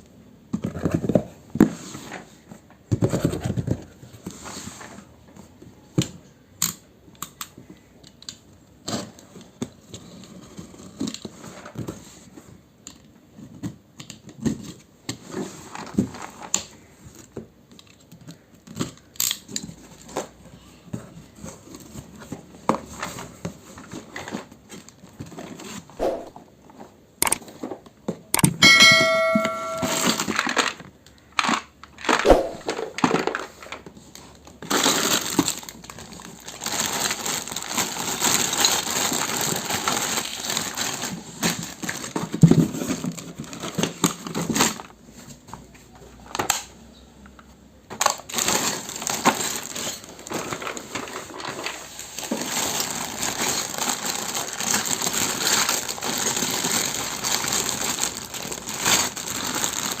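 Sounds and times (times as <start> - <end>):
plastic packaging crinkling: 31.4 - 45.0, 48.0 - 60.0.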